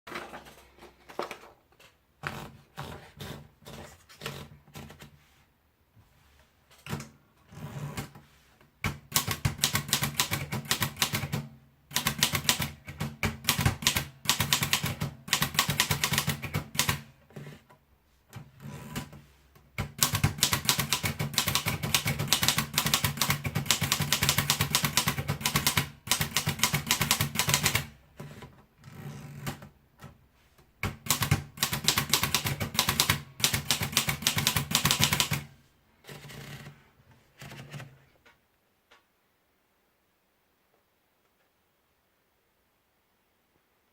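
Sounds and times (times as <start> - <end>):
manual typewriter typing: 8.8 - 17.1, 19.8 - 28.3, 30.8 - 35.5.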